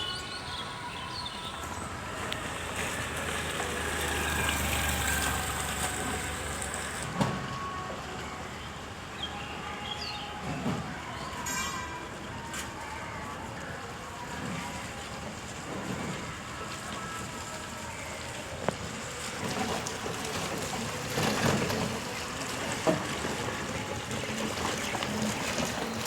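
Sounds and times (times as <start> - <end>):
vehicle passing: 0.0 - 7.1.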